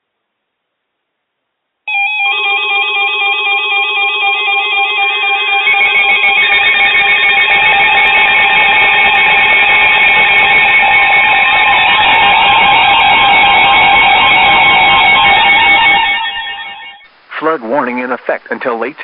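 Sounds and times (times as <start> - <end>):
warbling electronic alarm tones: 1.9 - 17.1
harsher alarm layer: 1.9 - 18.6.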